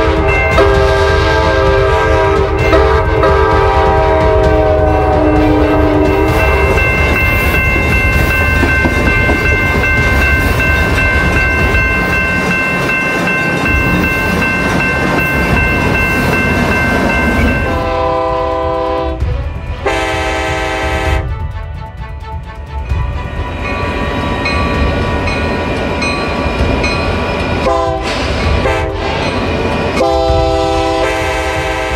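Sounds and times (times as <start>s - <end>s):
train horn blasts: 0.0s - 7.2s, 15.8s - 21.7s, 27.6s - 29.2s, 30.0s - 31.9s
music: 0.0s - 31.9s
train rumbling: 0.0s - 31.9s.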